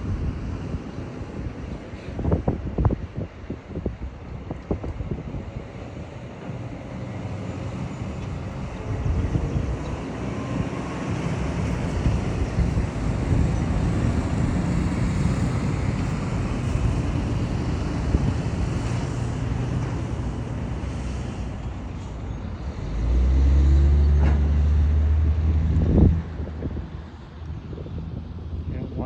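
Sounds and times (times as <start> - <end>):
road traffic rumble: 0.0 - 29.0
deep engine hum: 22.3 - 29.0.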